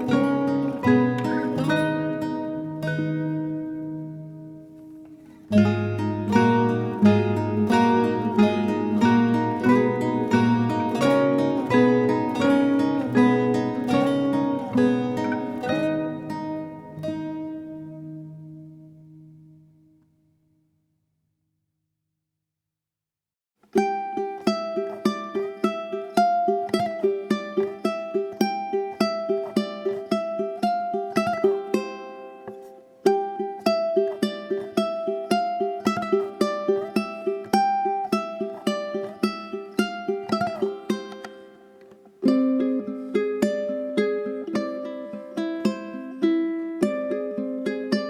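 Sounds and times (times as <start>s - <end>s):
plucked string melody: 0.0s - 20.4s, 23.6s - 48.0s.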